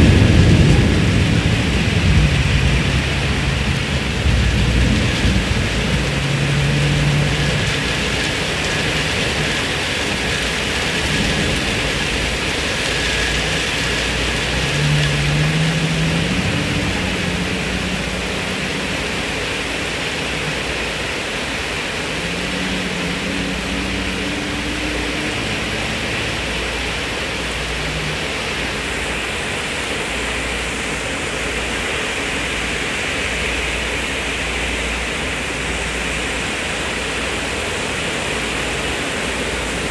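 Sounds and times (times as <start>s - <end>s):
thunder rumble: 0.0s - 29.3s
heavy rain: 0.0s - 39.9s.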